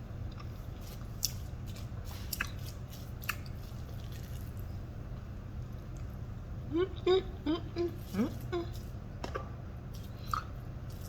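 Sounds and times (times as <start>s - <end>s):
steady low hum: 0.0s - 11.0s
person chewing food: 0.3s - 4.8s, 7.0s - 11.0s.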